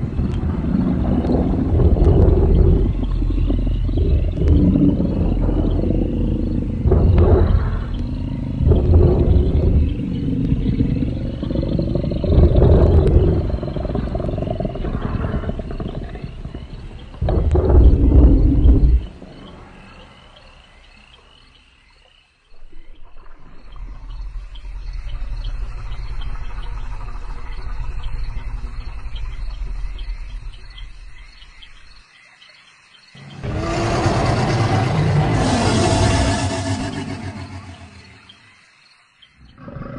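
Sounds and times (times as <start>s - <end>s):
deep low rumble: 0.0s - 19.5s, 33.2s - 38.4s
deep pulsing creature growl: 0.0s - 19.5s, 33.2s - 38.4s
crickets chirping: 0.0s - 39.9s
creature roar: 33.2s - 38.2s.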